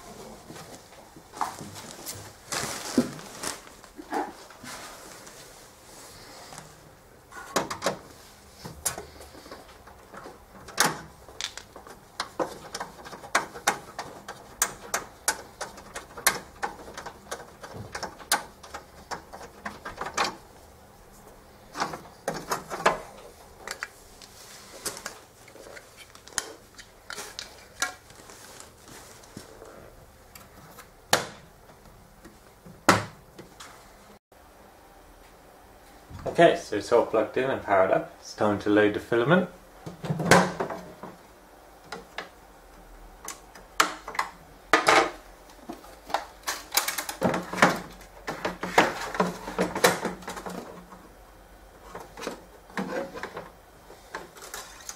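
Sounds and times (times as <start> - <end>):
hands handling plastic printer parts: 8.6 - 20.5, 21.7 - 29.5, 45.0 - 51.0, 51.8 - 54.9.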